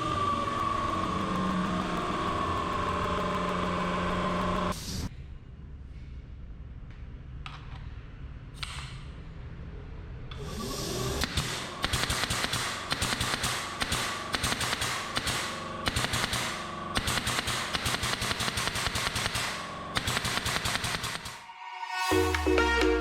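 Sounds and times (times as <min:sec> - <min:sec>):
air compressor motor whining: 0:00.0 - 0:05.1
rapid sharp cracks: 0:11.2 - 0:21.4.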